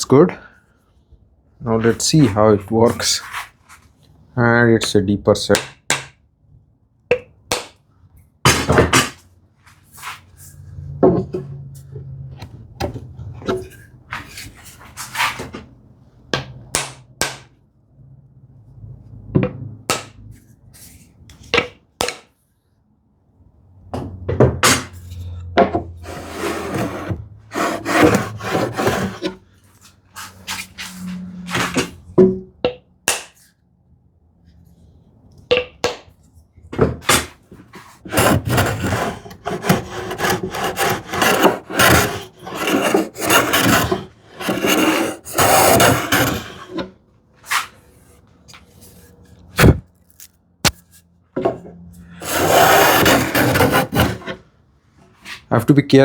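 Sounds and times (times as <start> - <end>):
hand plane shaving wood: 26.0 - 29.4, 38.0 - 46.8, 52.2 - 54.4.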